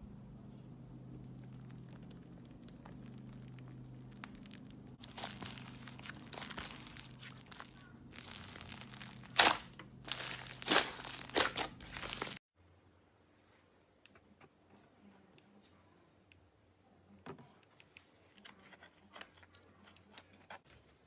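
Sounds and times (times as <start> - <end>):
slime crinkling and crackling: 1.1 - 12.4
slime popping: 1.2 - 12.4.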